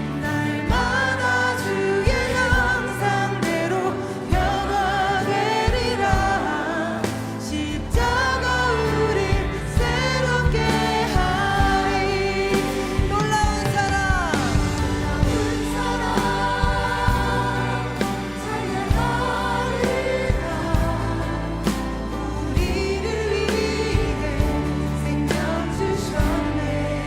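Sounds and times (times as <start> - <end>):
band playing: 0.0 - 27.0
people singing praise song: 0.0 - 27.0
steady drum beat: 0.7 - 1.2, 2.0 - 4.8, 5.7 - 7.3, 9.3 - 27.0.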